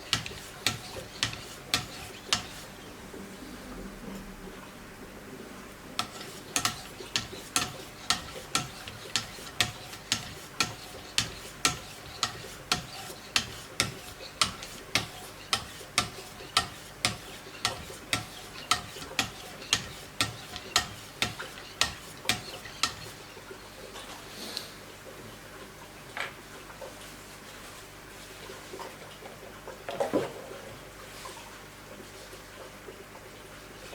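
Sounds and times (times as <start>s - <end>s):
sharpening stone scraping knife blade: 6.0s - 23.2s.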